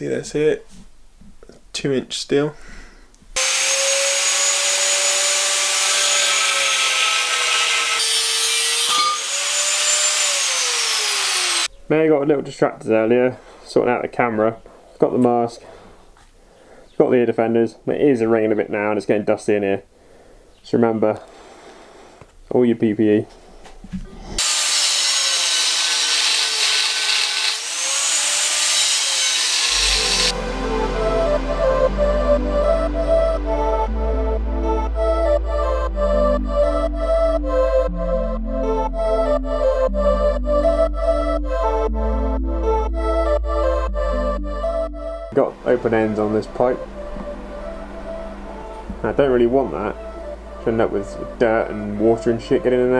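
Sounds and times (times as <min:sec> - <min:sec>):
angle grinder grinding steel: 0:03.4 - 0:11.7, 0:24.4 - 0:31.9, 0:45.4 - 0:52.9
music: 0:29.7 - 0:52.9.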